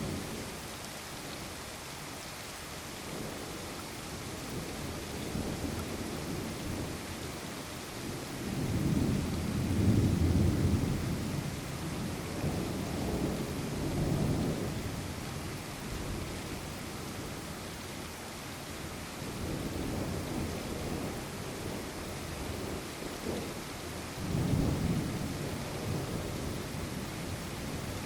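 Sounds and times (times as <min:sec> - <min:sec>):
rain falling: 0:00.0 - 0:28.0
rolling thunder: 0:08.4 - 0:11.6, 0:24.2 - 0:28.0.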